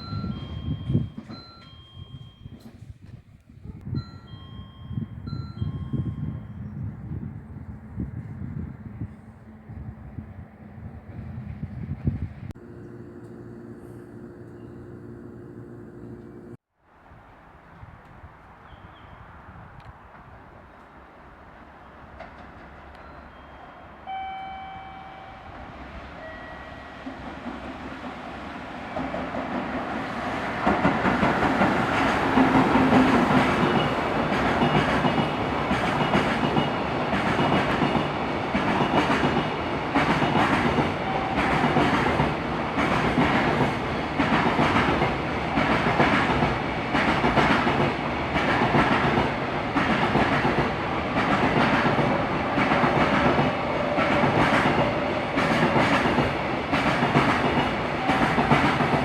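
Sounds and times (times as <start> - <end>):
train wheels clacking over rail joints: 30.6 - 59.0.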